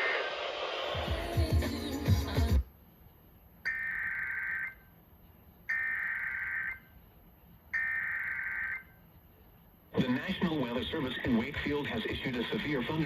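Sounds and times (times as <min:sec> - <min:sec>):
loud noisy sound: 0:00.0 - 0:02.1.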